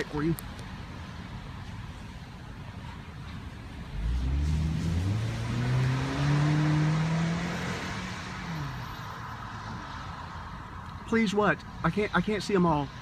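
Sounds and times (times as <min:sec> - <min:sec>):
car engine accelerating: 0:03.8 - 0:09.7.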